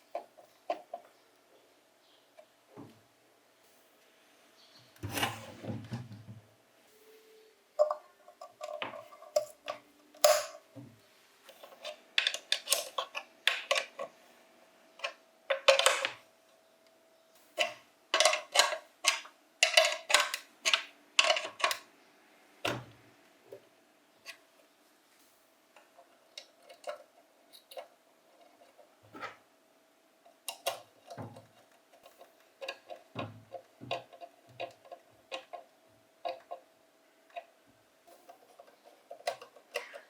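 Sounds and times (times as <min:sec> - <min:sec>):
small metal parts clicking and clinking: 0:07.8 - 0:10.6, 0:11.6 - 0:14.1, 0:15.0 - 0:16.2, 0:17.6 - 0:21.9, 0:26.4 - 0:27.9.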